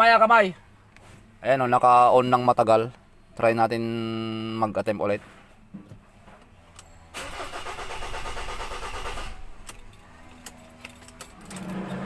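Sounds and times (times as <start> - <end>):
starter motor cranking engine: 7.2 - 9.7.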